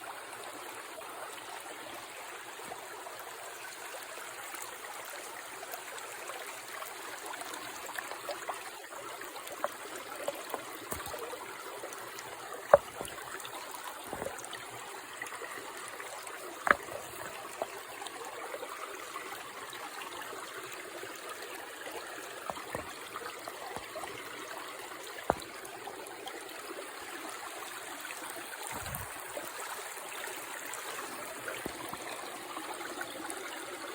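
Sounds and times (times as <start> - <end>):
creek water trickling: 0.0 - 33.9.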